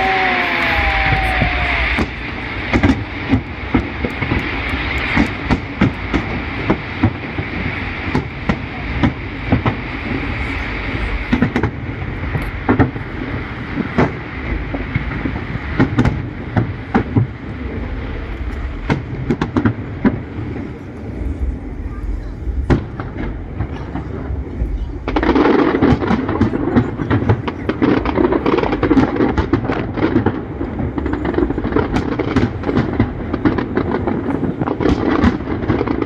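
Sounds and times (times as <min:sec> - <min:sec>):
fireworks bangs and cracks: 0:00.0 - 0:36.0.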